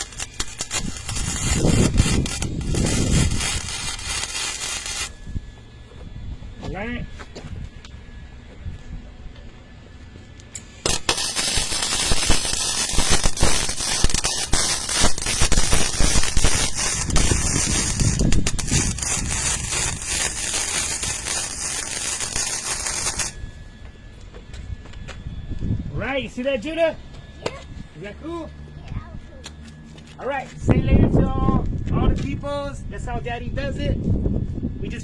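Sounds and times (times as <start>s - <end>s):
electric arc welder crackling: 0.0s - 5.2s, 10.6s - 23.4s.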